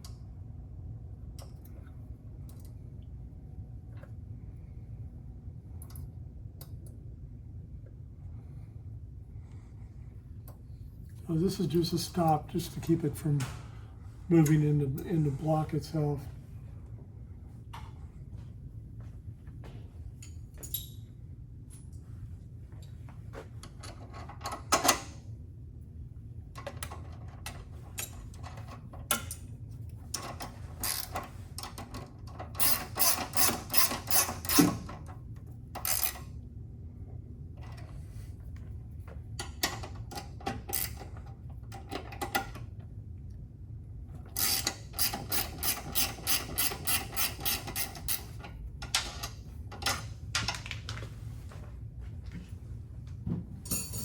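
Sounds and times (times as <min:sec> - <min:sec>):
tools and metal parts clinking: 0:20.2 - 0:21.1, 0:30.1 - 0:35.0, 0:44.3 - 0:50.6, 0:53.6 - 0:54.0
ratchet wrench clicking: 0:32.6 - 0:34.7, 0:44.4 - 0:48.3.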